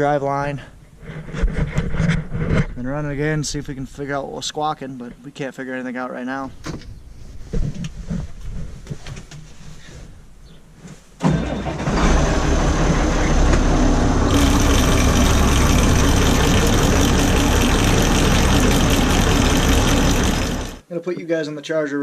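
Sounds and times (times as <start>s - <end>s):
grain auger running: 11.8s - 20.8s.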